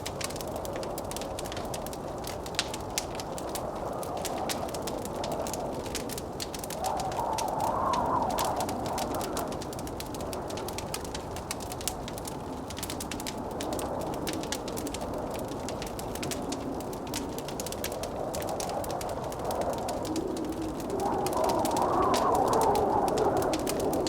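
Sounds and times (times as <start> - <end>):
howling blizzard wind: 0.0 - 24.0
wood fire crackling: 0.0 - 24.0.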